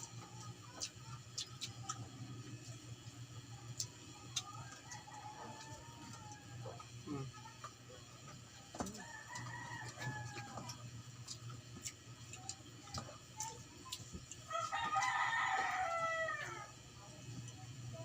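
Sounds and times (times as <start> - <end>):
rooster crowing: 4.5 - 6.8, 8.8 - 10.8, 14.5 - 16.8.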